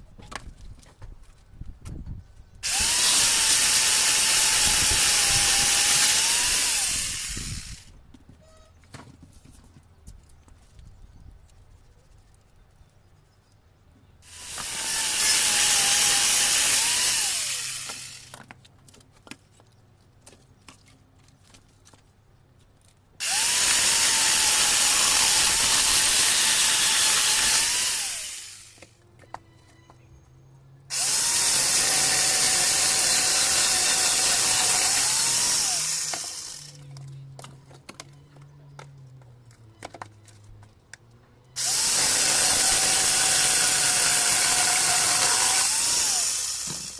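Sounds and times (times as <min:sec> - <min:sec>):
angle grinder cutting wood: 0:02.6 - 0:07.9, 0:14.2 - 0:18.4, 0:23.2 - 0:28.9, 0:30.9 - 0:37.1, 0:41.6 - 0:46.9.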